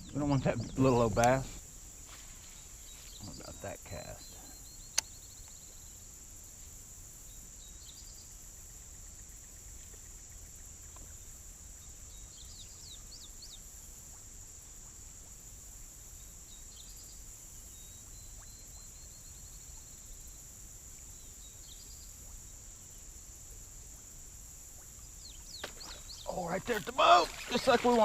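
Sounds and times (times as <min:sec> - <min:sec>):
bird chirps: 0:00.0 - 0:01.5.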